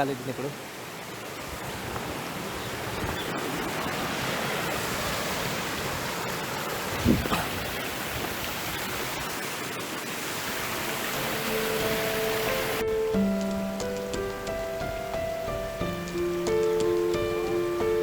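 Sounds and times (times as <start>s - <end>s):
stream water flowing: 0.0s - 18.0s.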